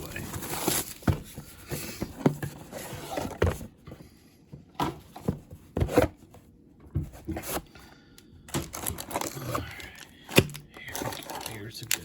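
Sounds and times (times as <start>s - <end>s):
cardboard box knocks and scrapes: 4.8s - 6.2s.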